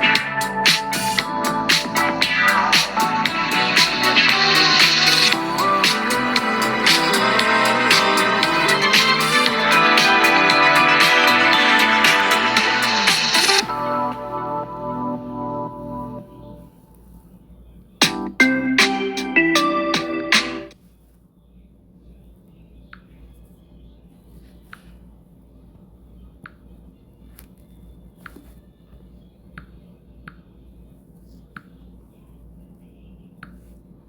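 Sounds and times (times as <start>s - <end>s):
electronic ringtone melody: 0.0s - 16.6s, 18.0s - 20.7s.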